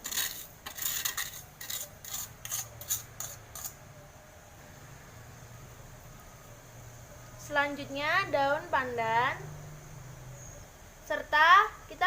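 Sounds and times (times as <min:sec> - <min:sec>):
spoon scraping and clinking: 0:00.0 - 0:03.8.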